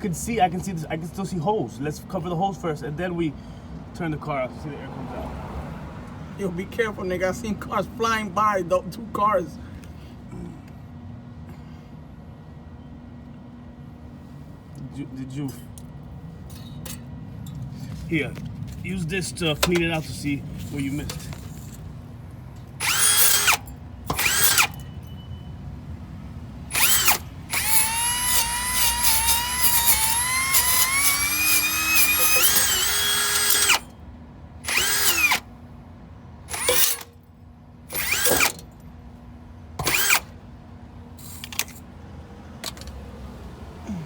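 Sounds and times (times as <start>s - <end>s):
handheld power tool grinding metal: 22.8s - 24.8s, 26.7s - 33.9s, 34.7s - 35.5s, 36.5s - 37.1s, 37.9s - 38.6s, 39.8s - 40.3s.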